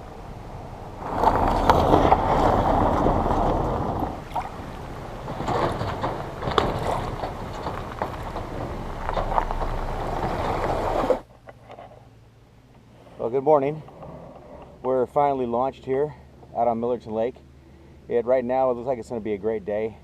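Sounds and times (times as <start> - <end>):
water rushing past kayak: 0.0 - 11.3.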